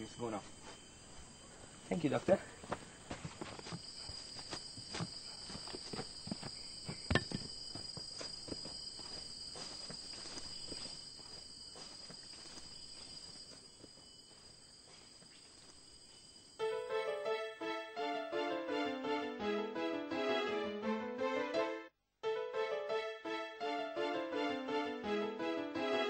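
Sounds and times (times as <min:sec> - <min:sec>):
crickets chirring: 0:00.0 - 0:19.4
footsteps: 0:02.6 - 0:15.8.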